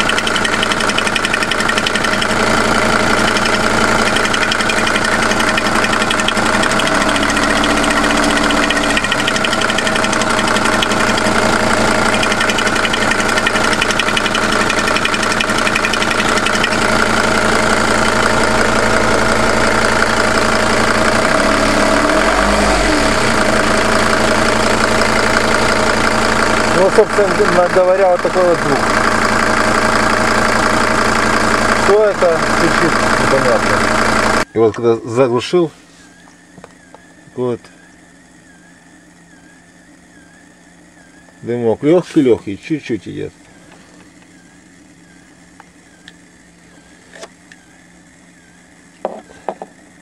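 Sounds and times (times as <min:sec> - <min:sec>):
diesel engine clattering: 0:00.0 - 0:34.9.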